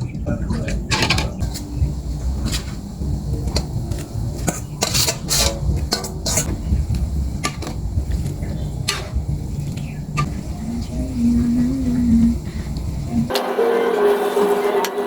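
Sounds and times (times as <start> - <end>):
low rumble: 0.0 - 13.3
metal utensil scraping cooking pot: 0.6 - 1.6, 4.4 - 6.6.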